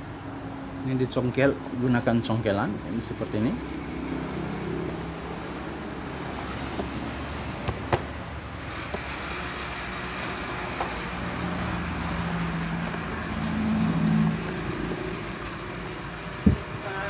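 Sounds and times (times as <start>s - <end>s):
traffic noise: 0.0s - 17.0s.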